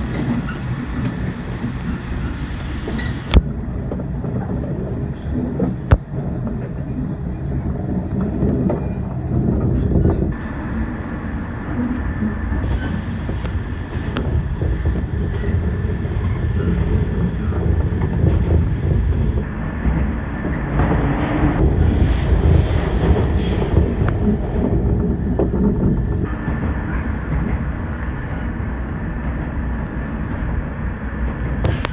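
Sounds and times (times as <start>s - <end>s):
train rumbling on rails: 0.0s - 31.9s.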